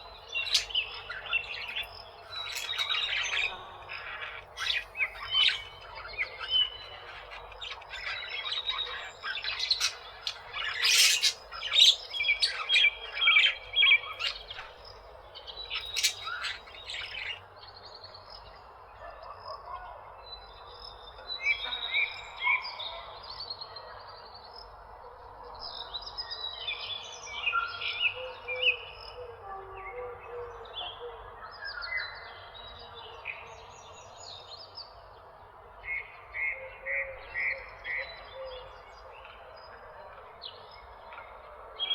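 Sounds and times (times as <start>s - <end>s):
parakeets chirping and squawking: 0.0s - 14.8s, 15.7s - 17.4s.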